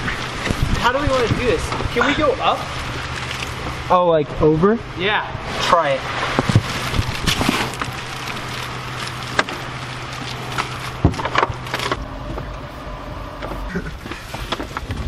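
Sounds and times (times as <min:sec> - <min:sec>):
low hum: 0:00.0 - 0:15.0
cardboard box scraping: 0:06.2 - 0:12.8.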